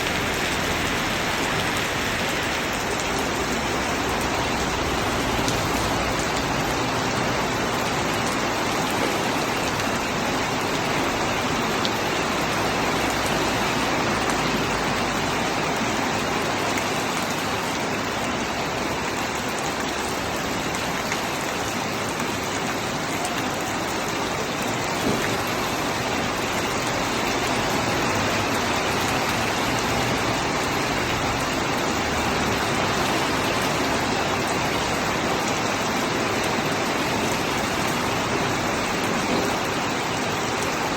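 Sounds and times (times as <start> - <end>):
rain pattering on surfaces: 0.0 - 40.9.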